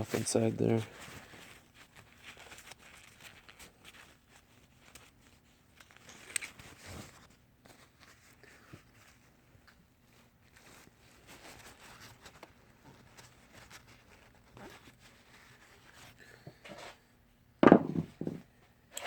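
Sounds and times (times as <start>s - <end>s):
loud knock: 17.6s - 18.4s.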